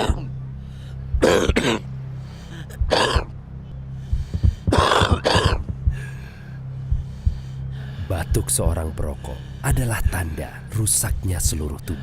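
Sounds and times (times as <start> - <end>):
person coughing hard: 0.0 - 0.3, 1.2 - 1.8, 2.9 - 3.3, 4.7 - 5.7
low drone: 0.0 - 12.0.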